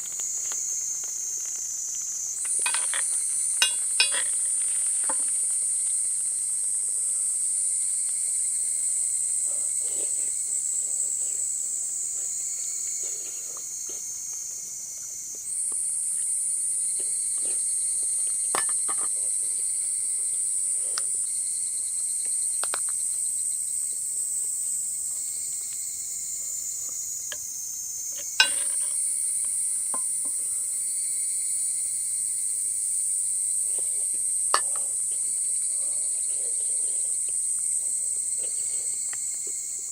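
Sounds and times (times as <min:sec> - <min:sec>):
high-pitched insect chorus: 0:00.0 - 0:39.9.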